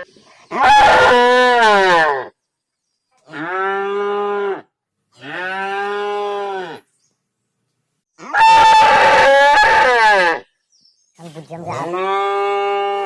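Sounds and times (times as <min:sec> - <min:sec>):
cow mooing: 0:03.3 - 0:06.9, 0:11.7 - 0:13.0.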